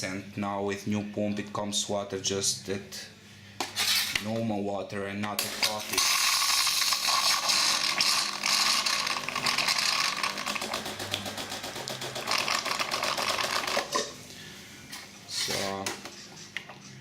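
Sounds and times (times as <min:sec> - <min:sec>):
coffee machine rattling and clicking: 0:06.8 - 0:14.0.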